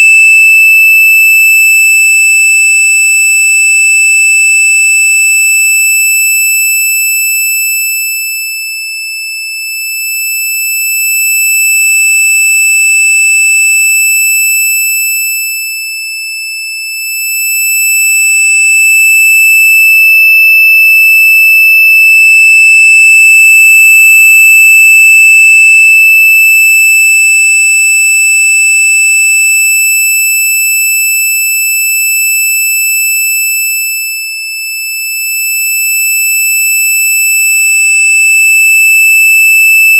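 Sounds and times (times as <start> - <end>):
high-pitched electronic tone: 0.0 - 0.5, 21.4 - 26.1.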